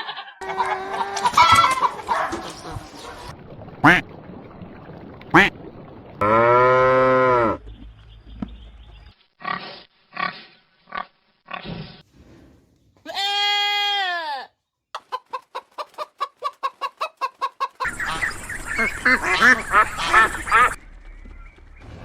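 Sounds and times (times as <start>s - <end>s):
goat bleating: 0.0s - 3.0s, 13.0s - 14.5s
fast pulsing animal calls: 0.4s - 3.3s.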